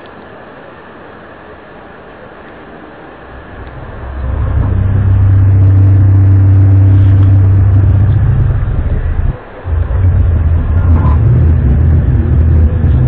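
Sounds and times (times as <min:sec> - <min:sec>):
low droning hum with tones: 0:03.1 - 0:13.0.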